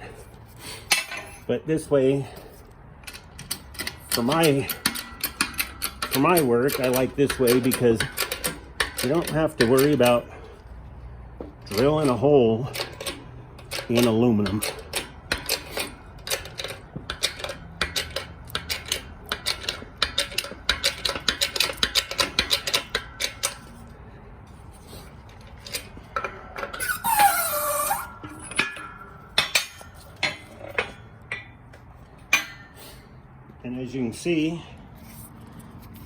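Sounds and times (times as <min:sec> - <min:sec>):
metal tools clicking and clinking: 0:25.2 - 0:31.6
short squeal falling in pitch: 0:26.8 - 0:28.2.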